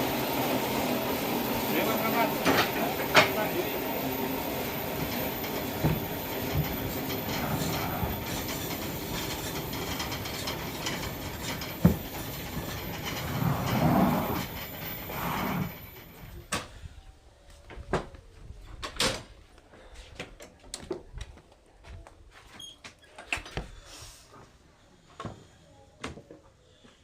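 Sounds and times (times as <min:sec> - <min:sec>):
sawmill machinery clattering: 0:00.0 - 0:16.4.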